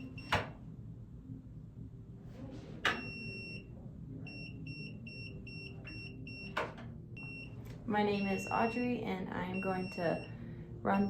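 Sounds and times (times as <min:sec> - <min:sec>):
piezo buzzer beeping: 0:00.0 - 0:00.4, 0:04.3 - 0:10.4.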